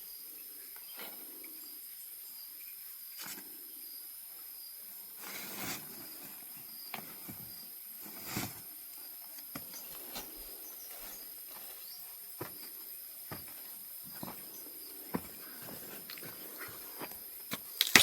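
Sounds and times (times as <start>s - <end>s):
insects droning: 0.0s - 18.0s
rustles in undergrowth: 5.2s - 8.8s.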